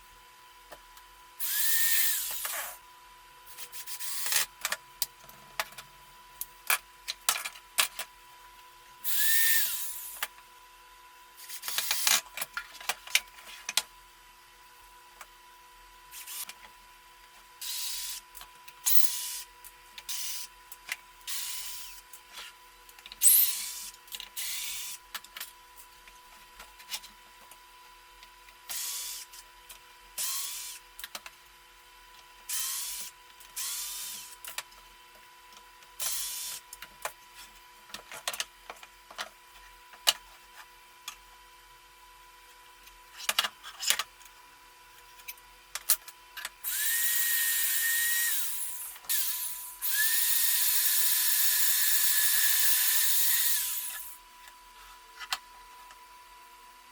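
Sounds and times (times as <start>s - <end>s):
power tool spinning up: 1.4s - 2.6s, 9.0s - 10.2s, 46.6s - 54.2s.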